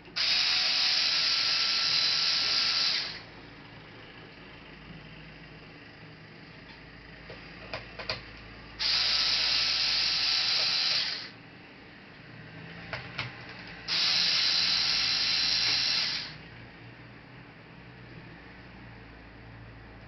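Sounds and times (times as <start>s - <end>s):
small motorised tool whirring: 0.1s - 3.4s, 8.8s - 11.4s, 13.4s - 16.4s.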